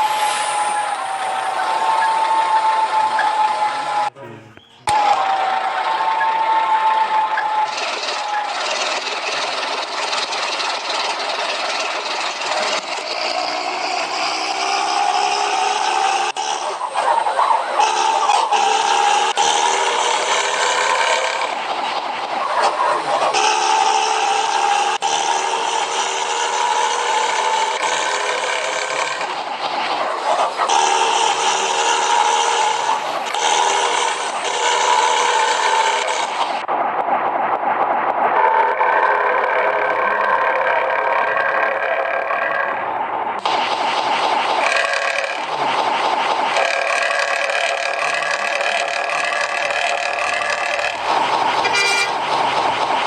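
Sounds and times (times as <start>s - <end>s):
rattly bus engine running: 0.0s - 53.0s
bus horn drone: 30.7s - 36.0s, 51.6s - 52.3s.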